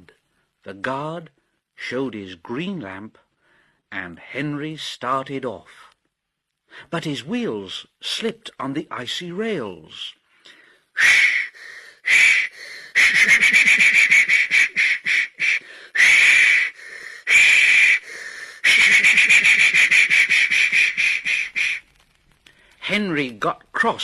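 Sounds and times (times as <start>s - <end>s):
hissing steam: 11.0s - 22.7s.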